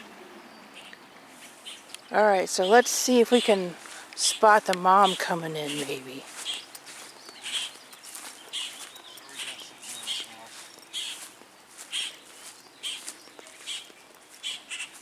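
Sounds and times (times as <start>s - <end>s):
bird giving harsh calls: 2.7s - 13.8s, 14.4s - 15.0s.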